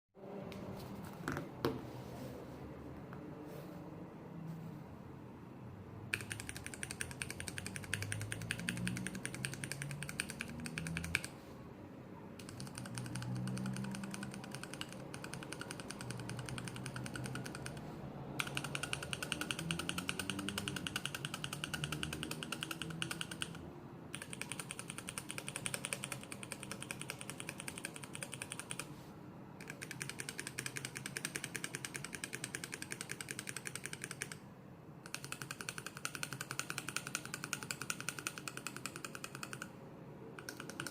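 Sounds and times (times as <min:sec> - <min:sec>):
mechanical keyboard switches clicking: 0:06.1 - 0:11.3, 0:12.4 - 0:17.8, 0:18.4 - 0:28.9, 0:29.6 - 0:34.4, 0:35.0 - 0:39.7, 0:40.4 - 0:40.9.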